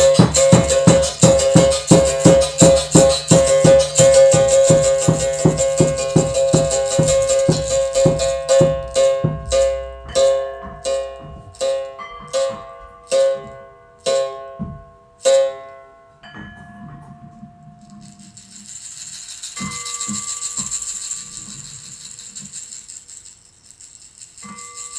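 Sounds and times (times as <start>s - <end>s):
berimbau string struck: 5.3s - 12.4s.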